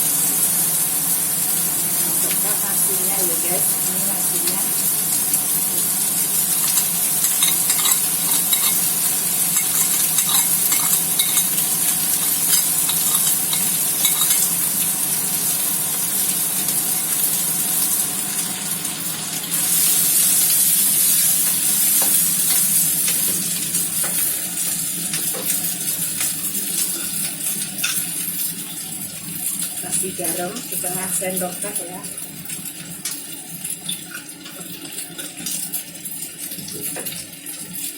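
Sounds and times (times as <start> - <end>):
food sizzling in a frying pan: 0.0 - 37.9
spatula scraping clicks: 6.6 - 14.6.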